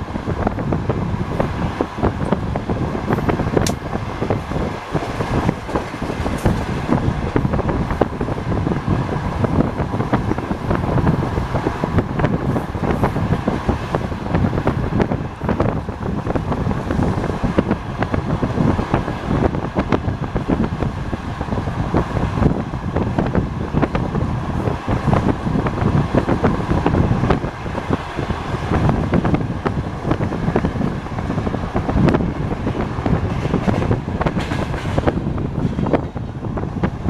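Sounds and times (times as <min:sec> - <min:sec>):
train carriage rumbling: 0:00.0 - 0:37.0
wind noise on microphone: 0:00.0 - 0:37.0
wheels clattering over rails: 0:01.3 - 0:08.6, 0:21.5 - 0:36.9.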